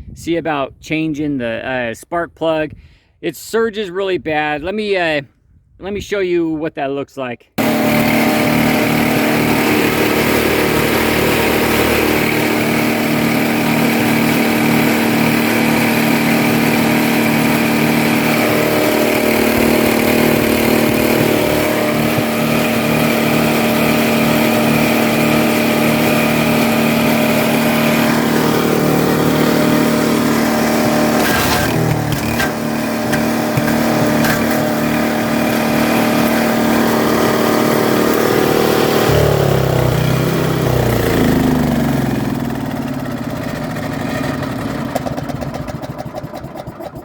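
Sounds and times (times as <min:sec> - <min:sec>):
small gasoline engine running loud: 0:07.6 - 0:47.0.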